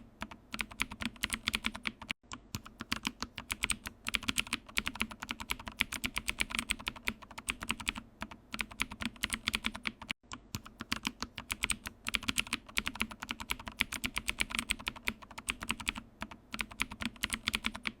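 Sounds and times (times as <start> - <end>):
fast keyboard typing: 0.2 - 18.0.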